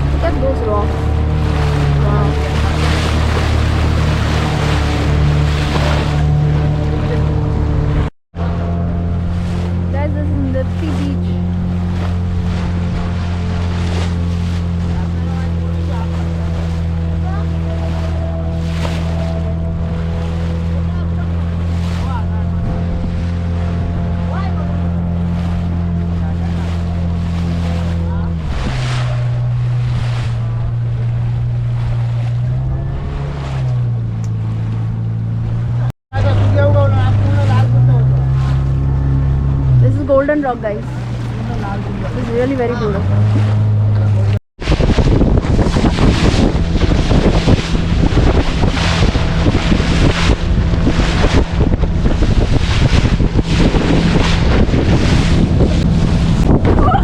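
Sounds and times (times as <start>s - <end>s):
motorboat engine droning: 0.0s - 57.0s
water splashing against hull: 0.0s - 57.0s
wind buffeting microphone: 0.0s - 57.0s.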